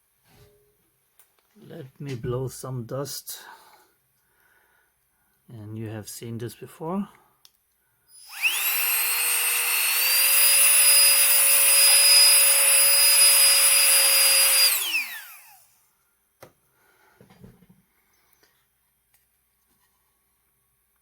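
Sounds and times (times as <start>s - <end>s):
electric air duster whining: 8.1s - 15.8s.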